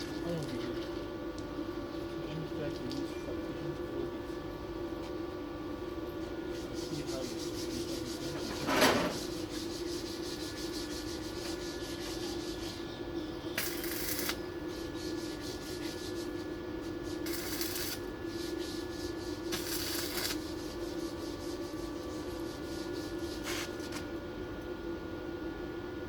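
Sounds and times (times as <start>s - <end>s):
electrical hum: 0.0s - 26.0s
arc welding crackle: 13.5s - 24.1s.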